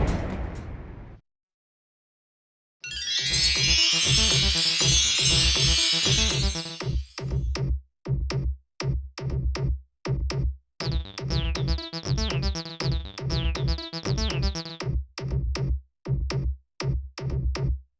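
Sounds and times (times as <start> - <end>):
synthesizer notes: 3.6 - 7.2, 10.8 - 14.8
drum machine beat: 4.2 - 17.8.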